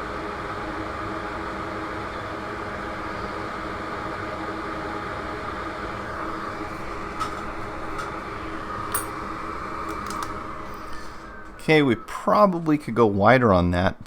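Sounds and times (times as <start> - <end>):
fan whirring hum: 0.0 - 14.0.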